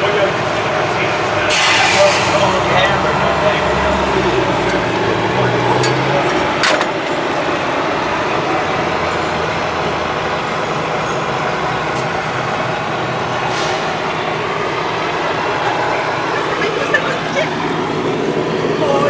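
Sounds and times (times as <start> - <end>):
heavy vehicle engine running low: 0.0 - 19.0
road noise: 0.0 - 19.0.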